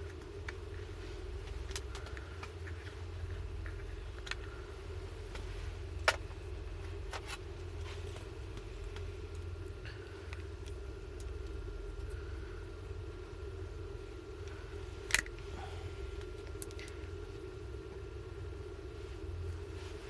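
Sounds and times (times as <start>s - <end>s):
firewood crackling and popping: 0.0s - 13.4s, 14.0s - 18.2s
low hum: 0.0s - 20.0s.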